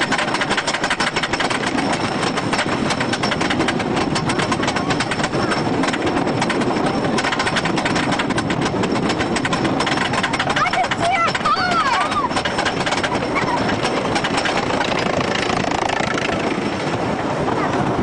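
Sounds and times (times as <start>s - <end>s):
roller coaster clattering on track: 0.0s - 18.0s.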